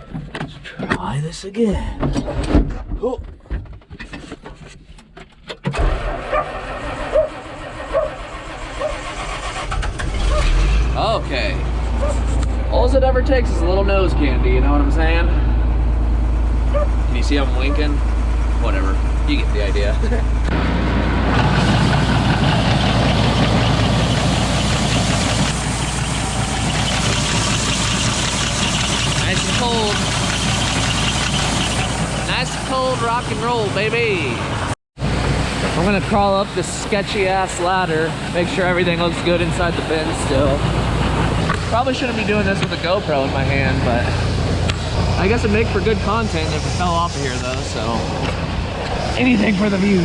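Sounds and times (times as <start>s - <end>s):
engine cranking and starting: 5.4s - 11.0s, 21.4s - 33.8s
diesel tractor engine running: 5.7s - 50.0s.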